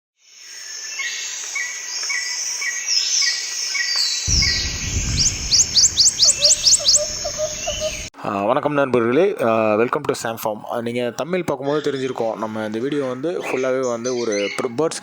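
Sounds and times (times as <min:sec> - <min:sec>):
birds chirping and calling: 0:04.3 - 0:08.1, 0:13.2 - 0:14.7
low rumble: 0:04.3 - 0:08.1.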